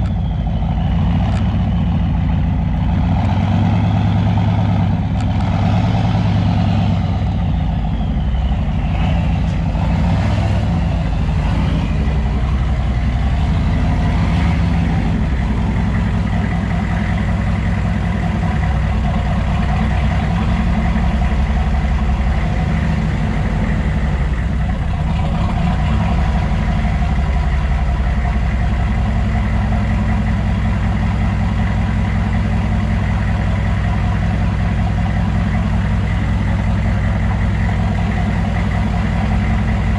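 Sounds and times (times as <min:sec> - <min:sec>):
turbo whistle: 0:00.0 - 0:03.0, 0:06.3 - 0:12.3
diesel engine idling: 0:00.0 - 0:39.9.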